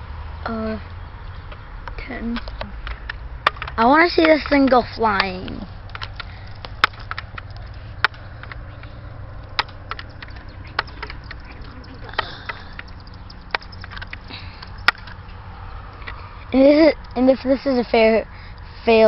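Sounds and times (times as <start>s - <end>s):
faint ticking and handling noise: 0.6s - 19.0s
air rifle pump clicks: 2.4s - 15.2s.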